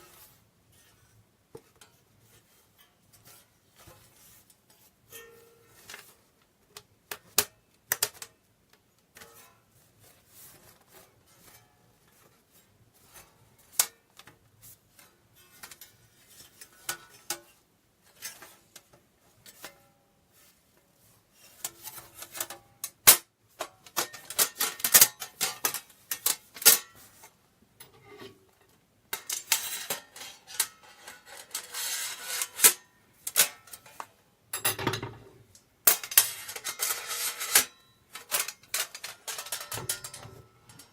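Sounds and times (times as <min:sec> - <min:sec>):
metal parts clinking and scraping: 0:29.2 - 0:34.0, 0:35.9 - 0:40.9.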